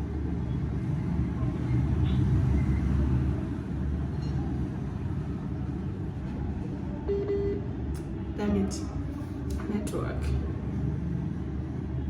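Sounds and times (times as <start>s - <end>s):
low rumbling background noise: 0.0s - 12.0s
brief steady tone: 7.1s - 7.6s.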